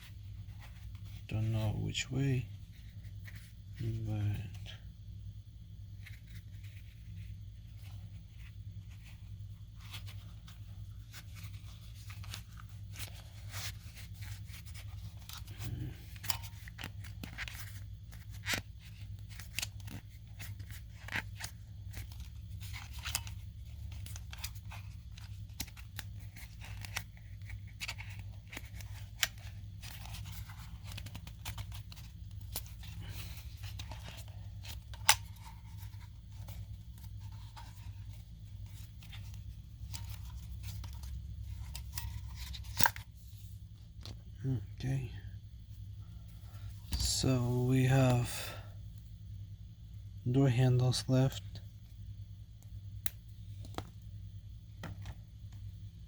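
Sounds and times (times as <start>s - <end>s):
low hum: 0.0s - 56.0s
hands handling plastic: 5.9s - 44.3s, 52.6s - 54.1s
stickers peeling: 9.8s - 43.1s.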